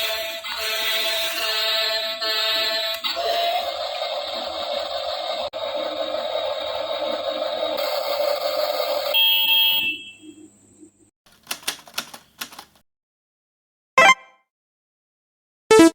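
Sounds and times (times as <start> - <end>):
toy excavator noise: 0.0 - 9.4
short electronic beep: 9.2 - 10.3, 14.0 - 14.4
quick clicks: 11.3 - 12.8.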